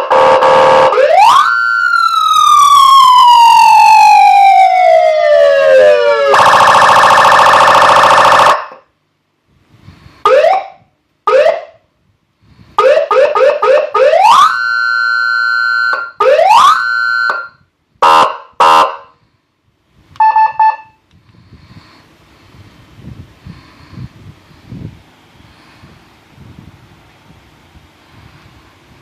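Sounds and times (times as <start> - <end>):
electronic siren whoops and chirps: 0.1 - 8.8, 12.8 - 19.0
beeping tone: 20.2 - 21.0.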